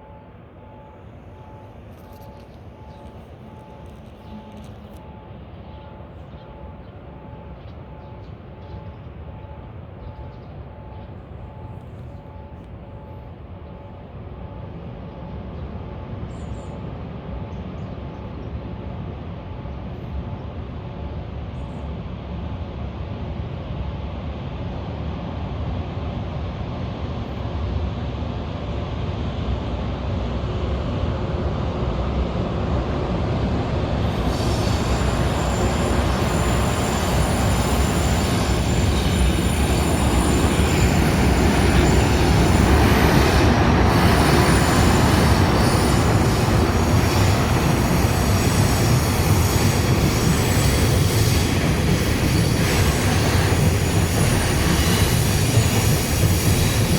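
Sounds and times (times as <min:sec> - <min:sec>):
electric train rumble: 0:00.0 - 0:56.9
high wheel squeal: 0:34.1 - 0:56.9.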